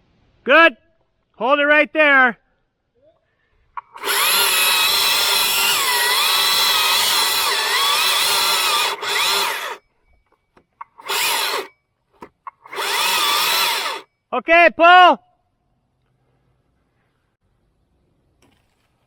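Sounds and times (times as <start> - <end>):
battery chainsaw cutting wood: 3.9 - 9.8, 11.0 - 11.7, 12.6 - 14.0.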